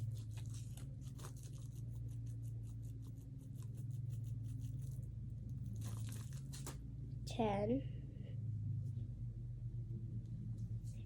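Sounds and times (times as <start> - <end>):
scratchy rustles: 0.0 - 6.8
steady low hum: 0.0 - 11.0.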